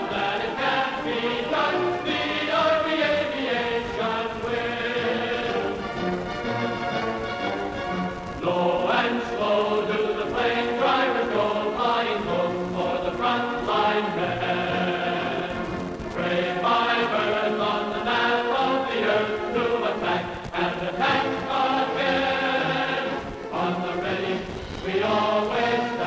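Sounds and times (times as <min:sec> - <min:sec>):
choir singing film music: 0:00.0 - 0:26.0.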